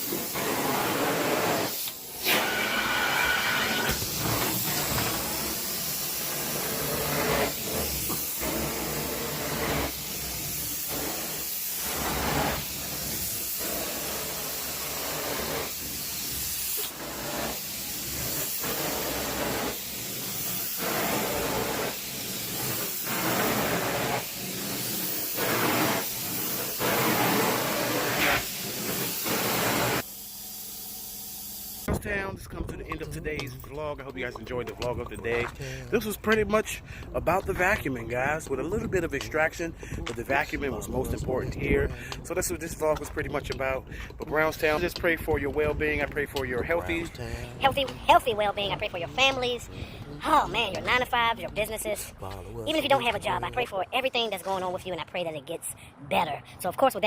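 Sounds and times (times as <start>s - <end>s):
carpet suction tool hissing: 0.0s - 31.9s.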